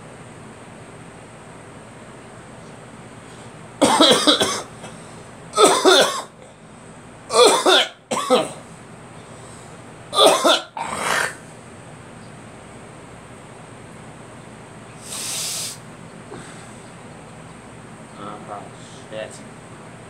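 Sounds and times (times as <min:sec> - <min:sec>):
person coughing: 0:03.8 - 0:04.9, 0:05.6 - 0:06.4, 0:07.3 - 0:08.6, 0:10.2 - 0:11.4.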